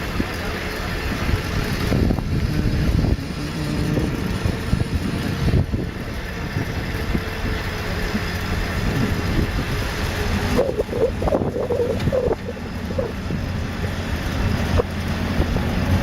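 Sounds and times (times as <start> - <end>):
wind buffeting microphone: 1.0 - 16.0
wavering tone: 10.2 - 13.8.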